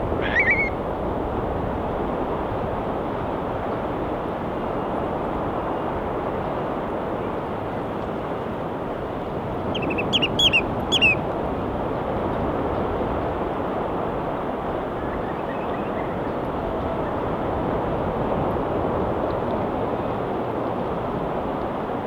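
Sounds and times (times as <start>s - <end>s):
seagull calls: 0.1s - 0.8s, 9.7s - 11.2s
ocean waves washing: 9.0s - 12.2s.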